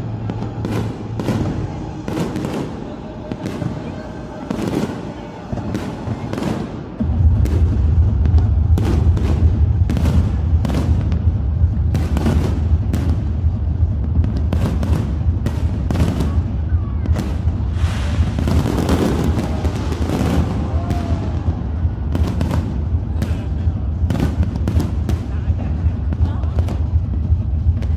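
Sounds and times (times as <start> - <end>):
fireworks bangs: 0.0 - 27.9
music: 0.0 - 27.9
deep low hum: 7.0 - 27.9.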